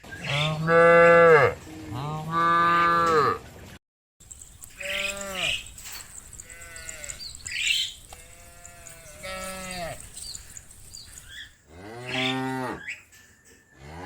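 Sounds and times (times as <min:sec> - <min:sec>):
cattle mooing: 0:00.3 - 0:03.4, 0:04.8 - 0:10.5, 0:11.7 - 0:13.0.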